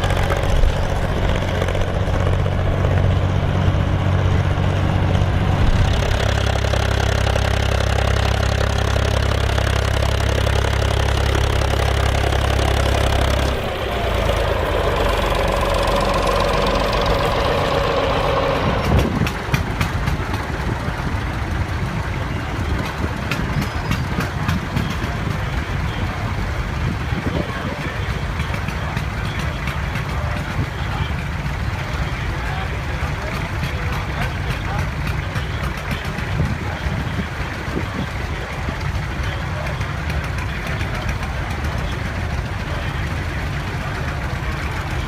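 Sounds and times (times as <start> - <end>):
tractor diesel engine running: 0.0 - 45.0.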